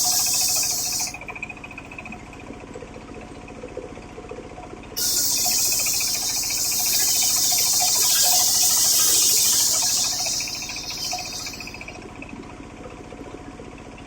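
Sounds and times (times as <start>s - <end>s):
engine pulsing: 0.0s - 1.2s, 5.0s - 12.2s
circular saw cutting timber: 5.0s - 12.0s.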